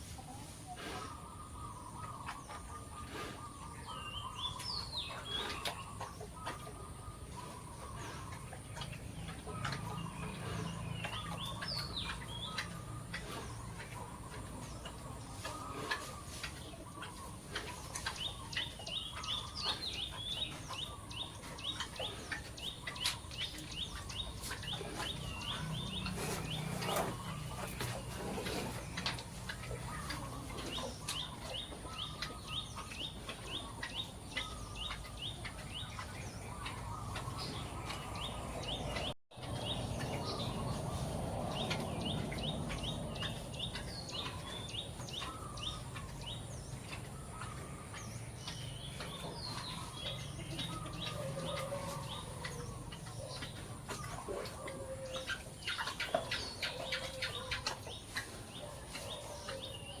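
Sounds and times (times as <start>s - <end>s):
birds chirping: 0.0s - 60.0s
chickens clucking: 0.0s - 60.0s.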